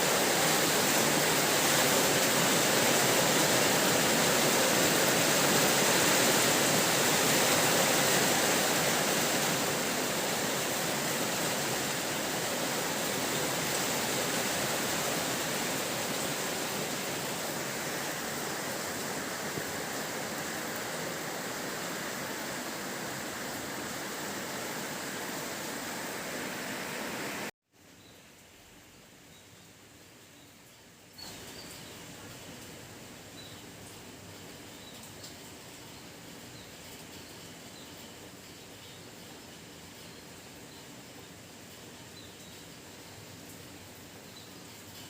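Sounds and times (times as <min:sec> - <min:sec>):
heavy rain falling: 0:00.0 - 0:27.5.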